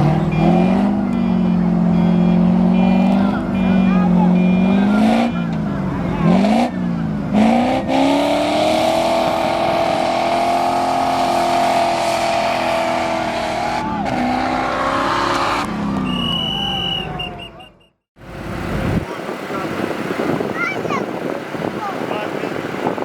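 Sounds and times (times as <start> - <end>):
engine revving hard: 0.0 - 5.4, 6.0 - 16.3.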